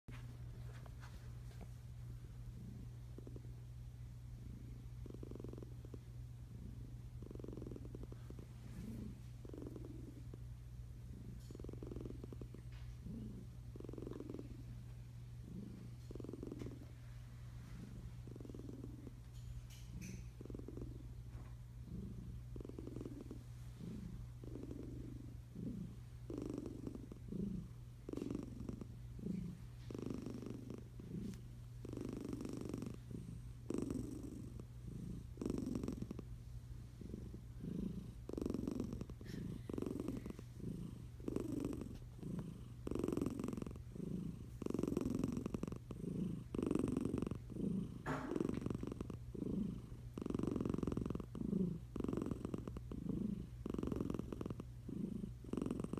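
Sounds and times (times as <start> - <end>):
cat snoring: 2.5 - 3.5, 4.4 - 10.4, 11.0 - 14.8, 15.4 - 17.0, 17.6 - 21.0, 21.8 - 36.3, 36.9 - 55.9.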